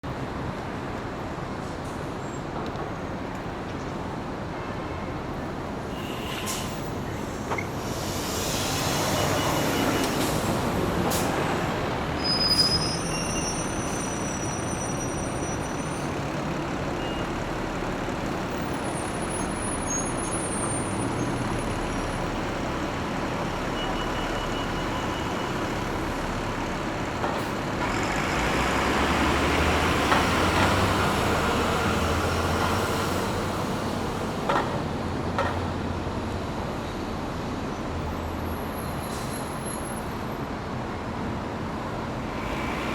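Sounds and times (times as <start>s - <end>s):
bus engines running: 0.1s - 42.9s
high brake squeal: 5.9s - 17.5s, 18.6s - 22.2s, 23.6s - 26.2s, 38.5s - 40.2s.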